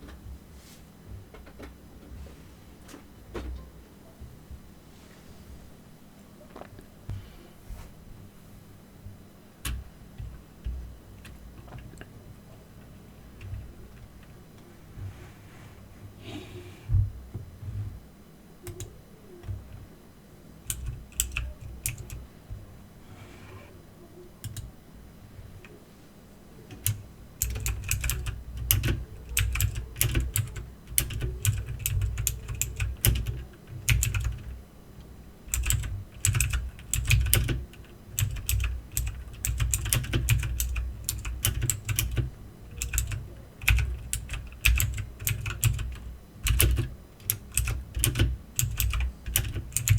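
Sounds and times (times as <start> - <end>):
mechanical keyboard typing: 18.7 - 19.8, 20.7 - 22.2, 24.4 - 24.7, 26.7 - 34.6, 35.4 - 49.9.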